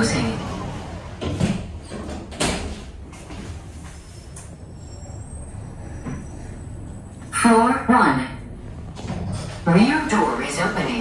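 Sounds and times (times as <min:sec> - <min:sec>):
lift car humming: 0:00.0 - 0:07.4.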